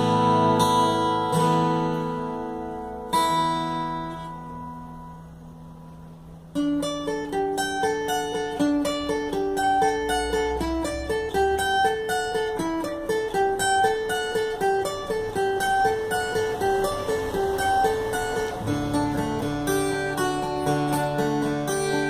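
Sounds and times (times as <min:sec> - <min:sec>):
fingerpicked acoustic guitar: 0:00.0 - 0:22.0.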